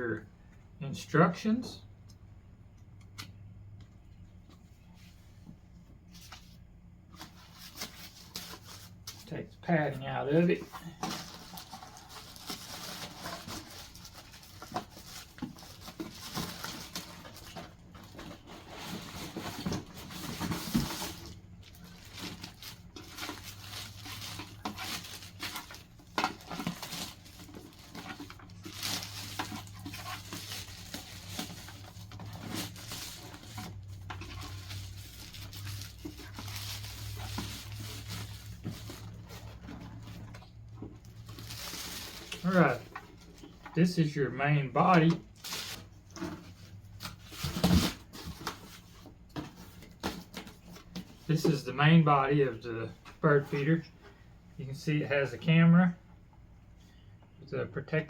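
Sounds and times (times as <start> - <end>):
packaging rustling and crinkling: 10.5 - 43.8, 44.7 - 52.2.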